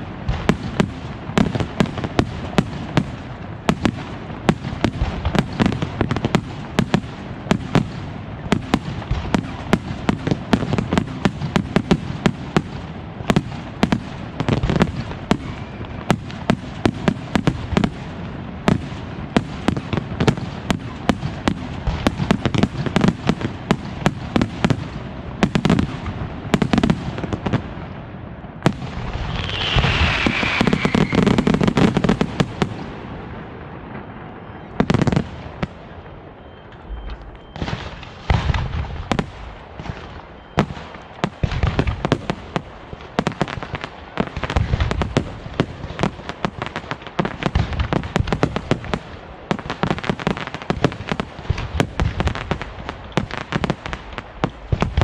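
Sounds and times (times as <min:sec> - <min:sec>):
continuous rushing noise: 0:00.0 - 0:55.0
fireworks bangs: 0:00.0 - 0:55.0.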